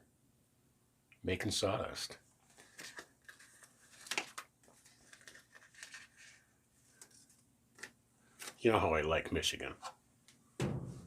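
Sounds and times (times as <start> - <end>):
sticker paper crinkling and rustling: 2.4 - 8.6.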